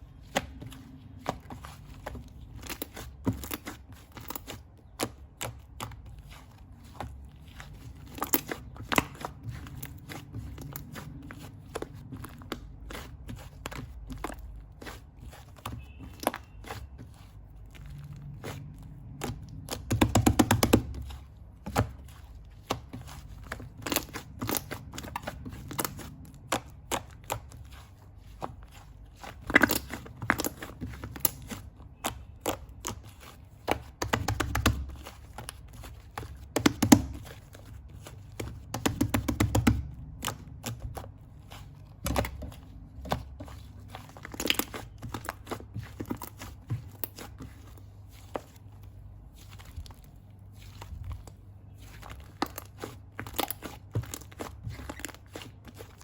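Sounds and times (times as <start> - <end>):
slime squishing: 0.0 - 56.0
sticky pops and crackles: 29.3 - 41.0.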